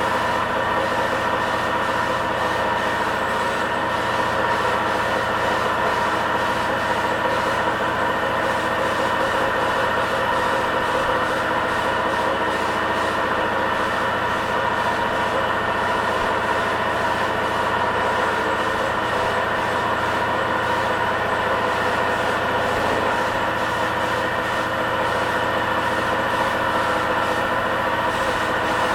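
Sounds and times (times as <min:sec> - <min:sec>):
air compressor humming: 0:00.0 - 0:28.9.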